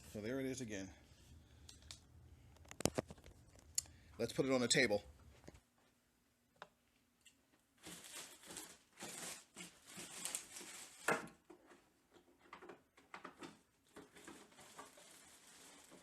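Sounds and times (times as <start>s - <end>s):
plastic wrapping ripping and crinkling: 7.8s - 11.3s, 14.0s - 16.0s.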